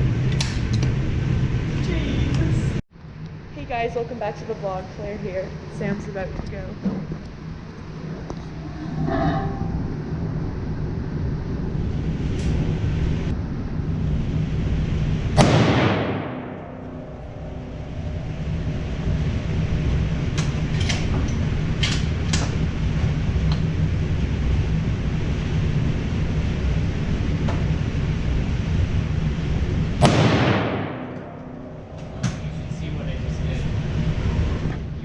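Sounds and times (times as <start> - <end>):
low rumble: 0.0 - 35.0
loud gunshot: 15.4 - 16.9, 30.0 - 31.4
quieter sharp cracks: 15.4 - 18.2, 30.0 - 32.5.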